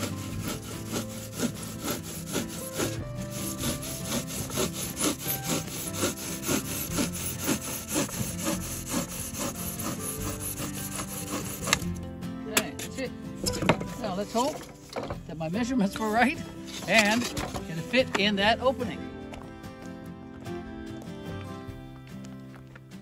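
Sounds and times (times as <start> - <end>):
hand saw cutting styrofoam: 0.0 - 12.0, 16.6 - 17.8.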